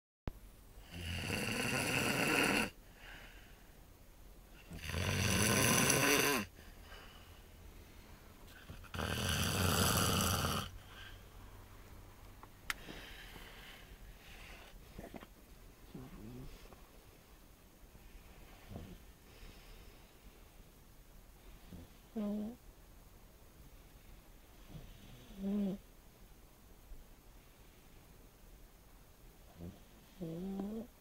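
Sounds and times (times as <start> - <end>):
quiet breathing: 0.7 - 22.7, 23.5 - 25.9, 27.2 - 31.0
person snoring loudly: 0.8 - 2.8, 4.6 - 6.5, 8.6 - 10.8, 29.6 - 30.9.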